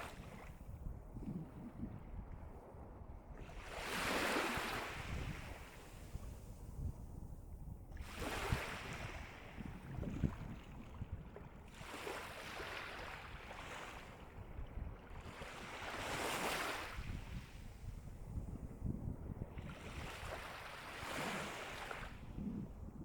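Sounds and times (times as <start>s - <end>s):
sea waves breaking on shore: 3.4s - 6.3s, 8.0s - 10.8s, 11.6s - 14.4s, 15.1s - 18.0s, 19.6s - 22.3s.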